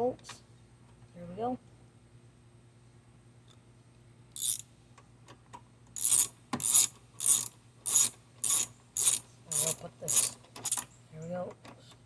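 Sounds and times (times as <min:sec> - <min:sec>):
ratchet wrench rasping: 0:04.4 - 0:04.6, 0:06.0 - 0:10.9.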